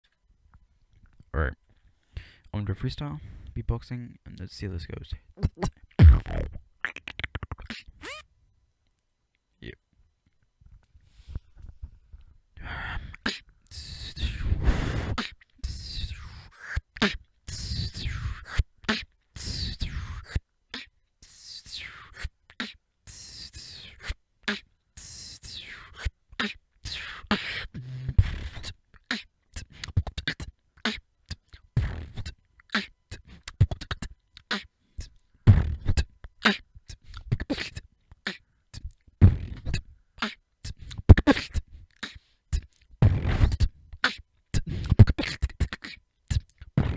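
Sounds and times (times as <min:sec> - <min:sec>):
person beatboxing: 0:05.4 - 0:08.2, 0:12.6 - 0:46.9.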